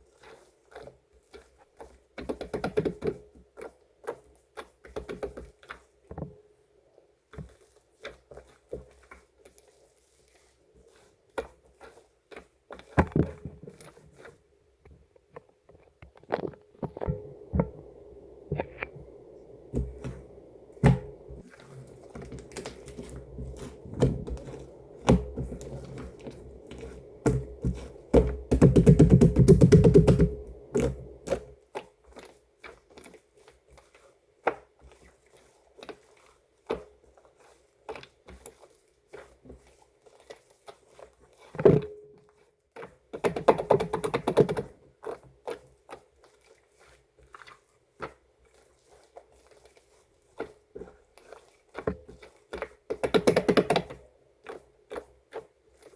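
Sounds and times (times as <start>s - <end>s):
crackling slime squelches: 15.1s - 41.5s, 43.3s - 55.9s.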